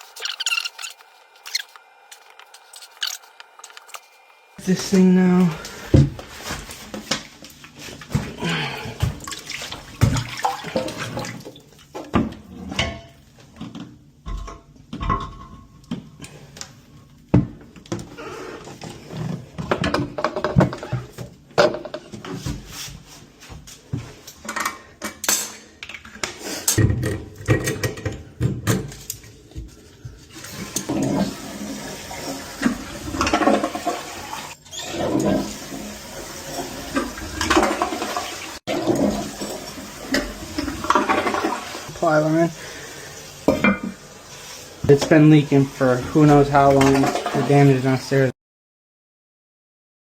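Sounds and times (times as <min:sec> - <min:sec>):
plumbing work knocks and clatter: 0:07.9 - 0:16.1, 0:18.8 - 0:22.7, 0:26.7 - 0:29.0, 0:32.6 - 0:34.2, 0:36.5 - 0:41.9
water rushing through toilet: 0:08.1 - 0:11.8, 0:30.3 - 0:48.2.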